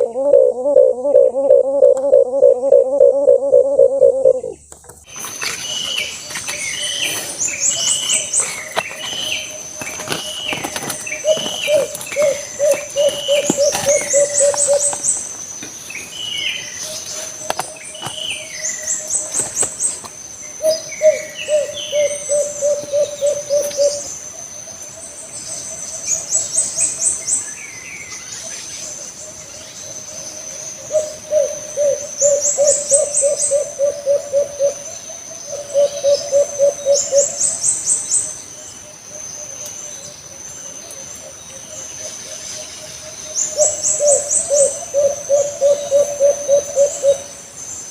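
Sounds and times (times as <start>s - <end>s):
dove cooing: 0.0s - 4.7s, 7.9s - 15.2s, 20.6s - 24.1s, 30.8s - 34.9s, 35.5s - 37.4s, 43.6s - 47.3s
small birds chirping: 0.0s - 30.2s
high insect drone: 0.0s - 47.9s.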